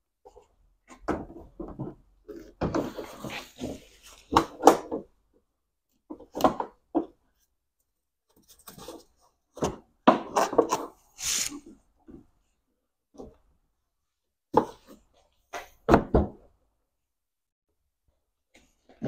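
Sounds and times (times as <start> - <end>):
brief scrape: 11.2 - 11.7.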